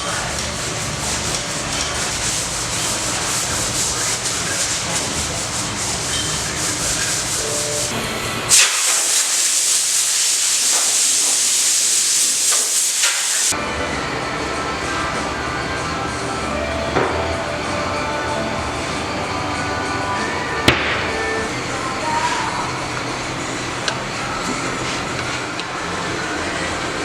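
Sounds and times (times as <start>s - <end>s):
sandpaper sanding scratchy hiss: 0.2s - 8.0s.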